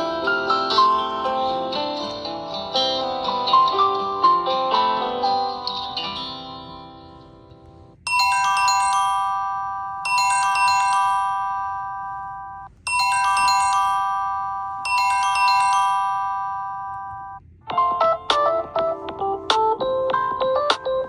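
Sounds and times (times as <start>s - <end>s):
plucked guitar ringtone: 0.0s - 7.0s, 8.1s - 21.0s
mallet chime ringtone: 0.3s - 2.9s, 8.1s - 17.4s.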